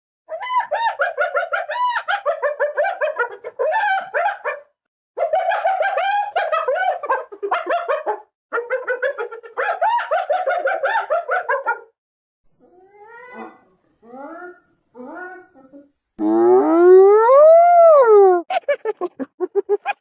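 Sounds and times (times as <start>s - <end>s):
hyena giggling: 18.5s - 20.0s.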